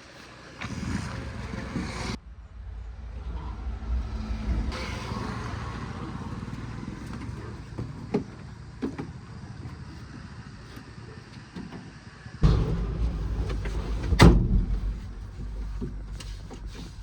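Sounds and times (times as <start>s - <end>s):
diesel engine running: 0.3s - 17.0s
short metallic knocks: 12.4s - 17.0s.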